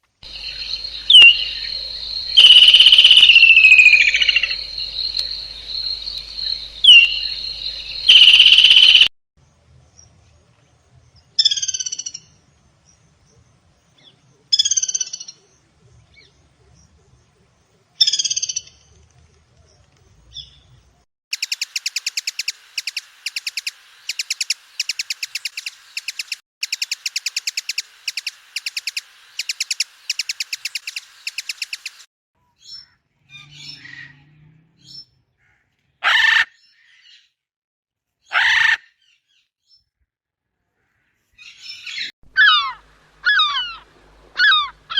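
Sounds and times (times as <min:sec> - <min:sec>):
fast pulsed bird trill: 0:00.2 - 0:09.1, 0:21.3 - 0:32.1
harsh bird calls: 0:00.2 - 0:09.1, 0:41.4 - 0:44.9
short bird calls: 0:00.2 - 0:09.1, 0:41.4 - 0:44.9.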